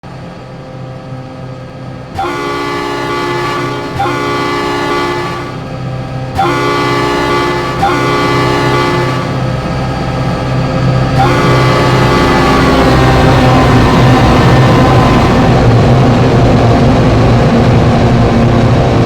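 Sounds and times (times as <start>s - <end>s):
steady low rumble: 0.1s - 19.0s
train horn blasts: 2.1s - 16.6s.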